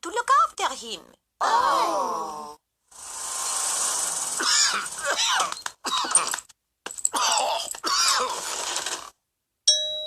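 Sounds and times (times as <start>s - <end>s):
cartoon bear coughing: 7.1s - 8.4s.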